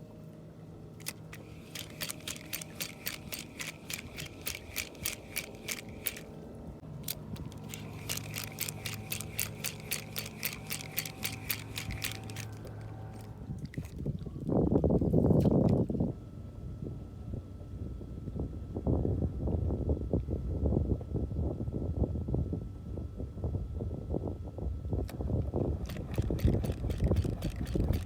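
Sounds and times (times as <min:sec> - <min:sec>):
steady low hum: 0:00.0 - 0:28.0
fishing reel clicking: 0:01.0 - 0:06.3, 0:07.0 - 0:14.0, 0:25.8 - 0:28.0.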